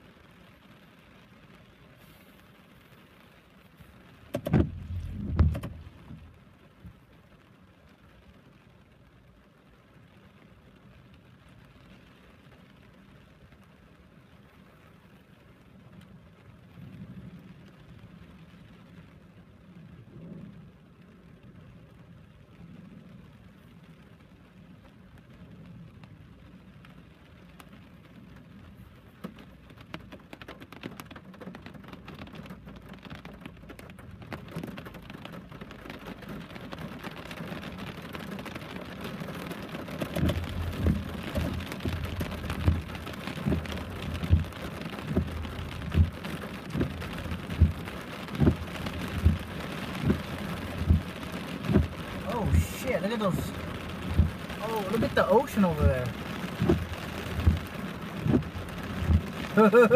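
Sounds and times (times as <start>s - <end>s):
heavy rain: 0.0s - 59.9s
heavy low thumps: 4.5s - 6.3s
low hum: 4.6s - 6.4s.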